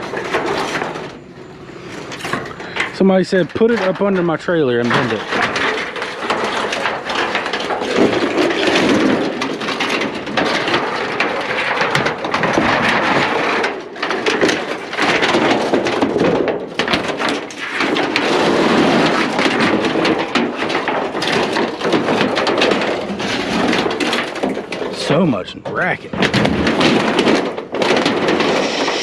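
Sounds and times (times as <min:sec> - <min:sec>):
sheet tin crumpling: 0:00.0 - 0:29.0.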